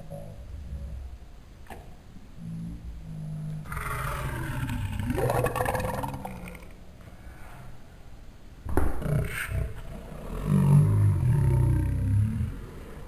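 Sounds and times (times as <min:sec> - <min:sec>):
slowed-down burp: 0:02.4 - 0:06.8, 0:08.9 - 0:13.0.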